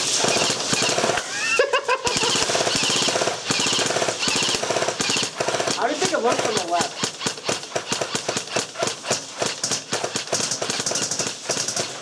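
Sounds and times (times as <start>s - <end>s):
airsoft guns firing: 0.0s - 12.0s.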